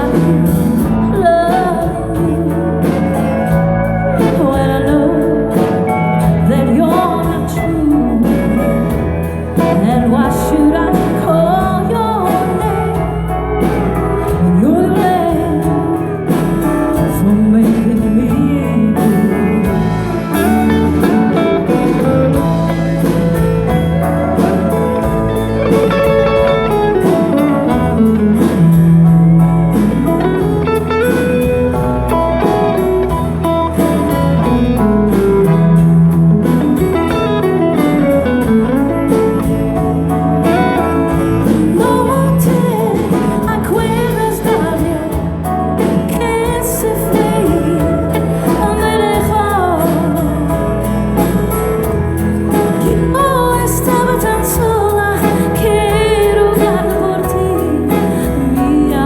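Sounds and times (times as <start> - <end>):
electric guitar: 0.0 - 59.0
live band music: 0.0 - 59.0
steady drum beat: 0.0 - 59.0.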